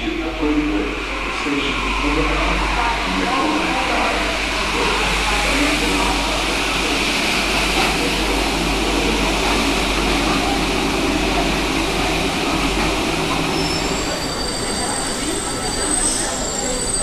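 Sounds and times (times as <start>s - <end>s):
metro train rumbling: 0.0s - 17.0s
high squeal: 12.7s - 17.0s.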